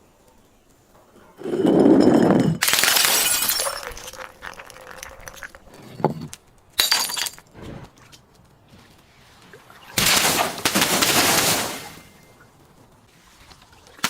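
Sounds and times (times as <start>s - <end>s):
glass bottle shattering: 1.4s - 7.4s
glass cracking: 1.4s - 7.5s.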